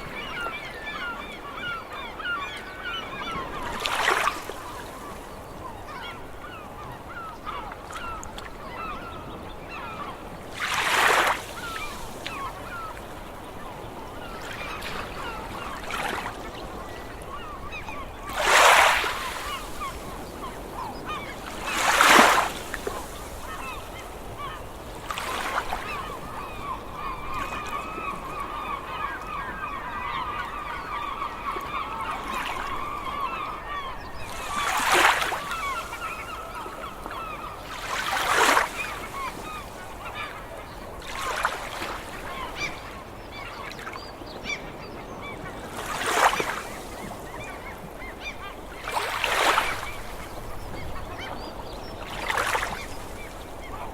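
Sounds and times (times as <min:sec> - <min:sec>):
seagulls calling: 0:00.0 - 0:53.9.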